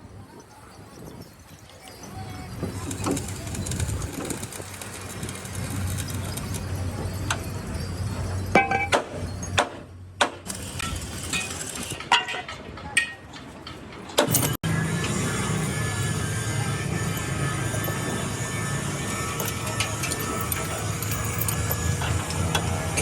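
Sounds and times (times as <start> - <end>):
metallic clanks: 8.3 - 23.0.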